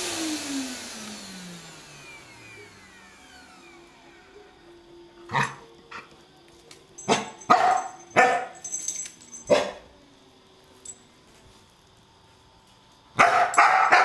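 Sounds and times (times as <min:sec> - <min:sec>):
dog barking: 0:07.1 - 0:08.6, 0:09.5 - 0:09.9, 0:13.2 - 0:14.0.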